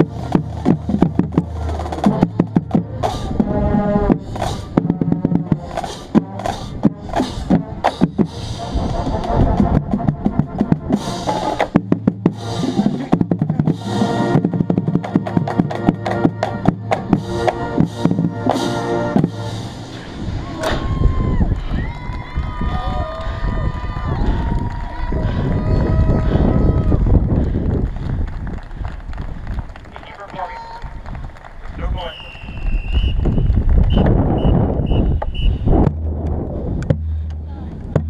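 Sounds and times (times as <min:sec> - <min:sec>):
bass drum and snare drumming: 0:00.0 - 0:19.7, 0:32.4 - 0:38.0
brass and wind chords: 0:00.0 - 0:20.6.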